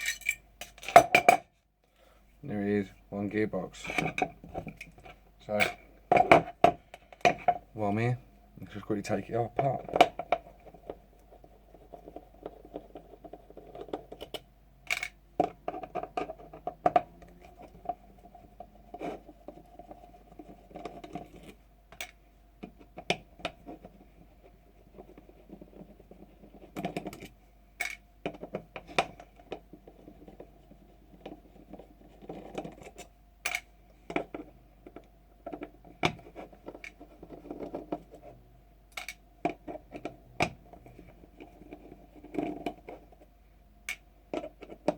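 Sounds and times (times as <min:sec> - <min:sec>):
small metal parts clicking and scraping: 0:00.0 - 0:01.0.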